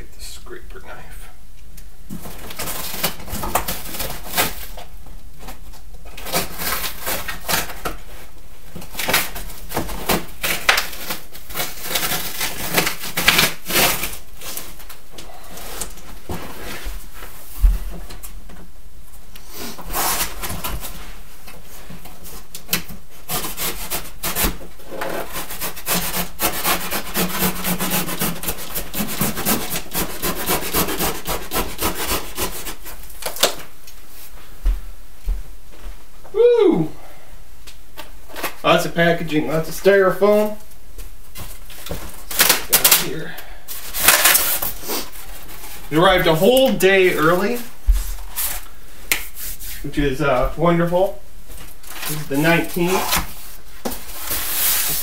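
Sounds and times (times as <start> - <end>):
knife scraping tape and cardboard: 9.0 - 14.6, 19.7 - 20.9, 23.2 - 33.0, 43.8 - 45.7, 51.9 - 55.0
cardboard being handled: 51.0 - 55.0.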